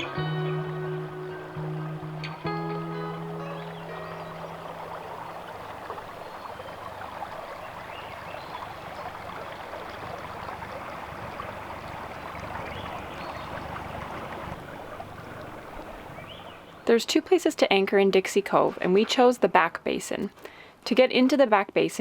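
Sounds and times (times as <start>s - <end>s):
water splashing along boat hull: 0.0s - 16.9s, 18.2s - 19.4s.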